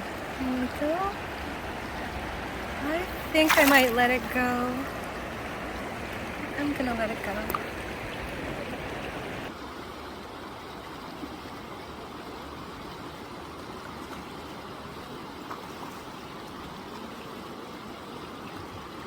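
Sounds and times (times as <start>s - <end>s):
river current rushing: 0.0s - 10.3s.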